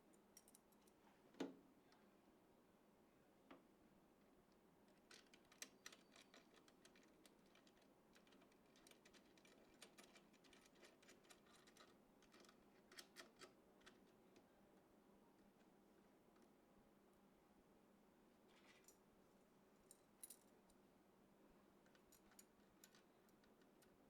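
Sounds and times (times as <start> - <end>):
faint steady hum: 0.0 - 24.0.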